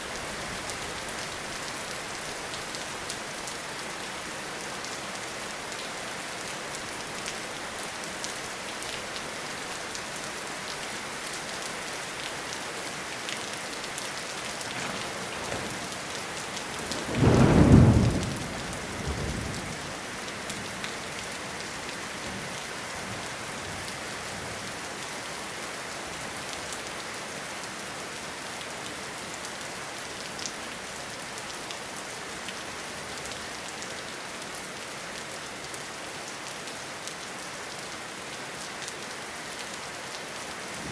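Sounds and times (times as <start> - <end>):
steady rain falling: 0.0 - 40.9
faint thunder rumble: 14.6 - 20.1
thunderclap: 14.7 - 19.9.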